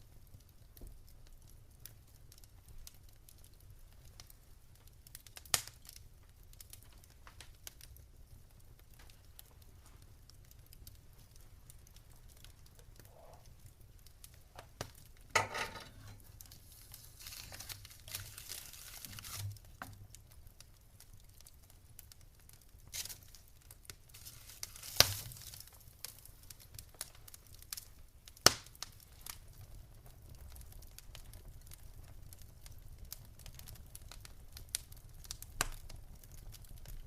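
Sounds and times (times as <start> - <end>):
wood fire crackling: 0.0 - 37.0
fire hissing: 12.8 - 19.8, 23.9 - 25.8.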